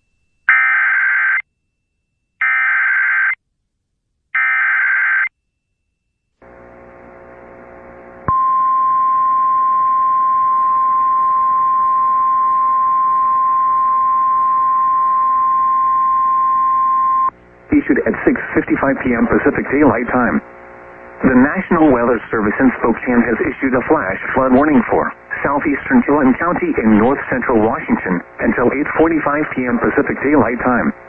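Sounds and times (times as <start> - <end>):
steady single-pitch warning tone: 8.3 - 17.4.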